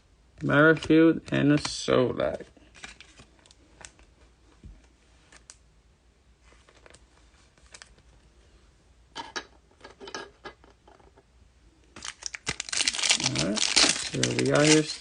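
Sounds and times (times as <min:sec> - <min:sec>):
trading cards shuffling: 0:12.0 - 0:15.0.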